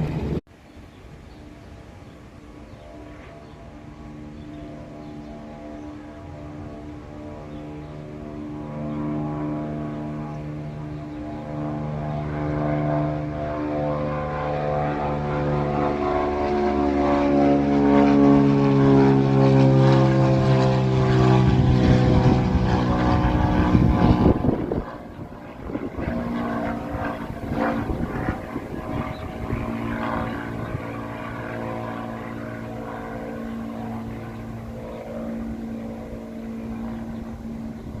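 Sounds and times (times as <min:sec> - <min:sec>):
propeller aircraft engine taxiing: 0:00.0 - 0:38.0.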